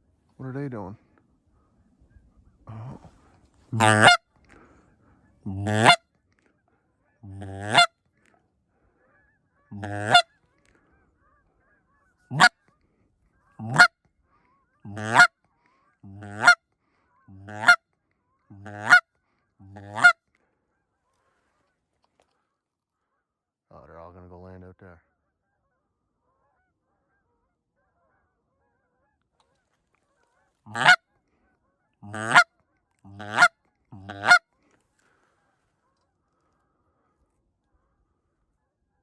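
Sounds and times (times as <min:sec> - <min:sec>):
goose call honks: 0:03.7 - 0:04.2, 0:05.5 - 0:06.0, 0:07.2 - 0:07.9, 0:09.7 - 0:10.4, 0:12.3 - 0:12.6, 0:13.6 - 0:13.9, 0:14.9 - 0:15.3, 0:16.0 - 0:16.6, 0:17.3 - 0:17.8, 0:18.5 - 0:19.0, 0:19.6 - 0:20.2, 0:30.7 - 0:31.0, 0:32.0 - 0:32.5, 0:33.1 - 0:34.4.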